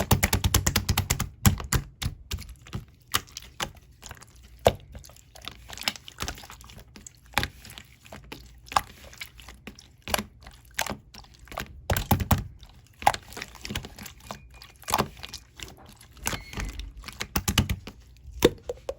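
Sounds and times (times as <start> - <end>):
slime clicking and popping: 17.2 - 17.8, 18.4 - 18.9.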